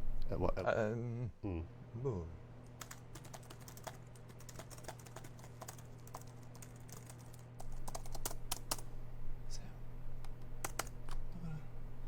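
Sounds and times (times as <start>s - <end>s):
steady low hum: 0.0s - 12.0s
laptop keyboard typing: 2.7s - 8.9s, 10.3s - 11.2s.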